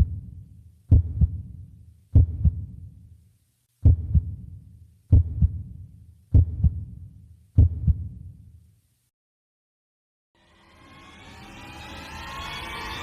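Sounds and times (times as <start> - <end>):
slow heartbeat: 0.0 - 3.0, 3.8 - 8.4.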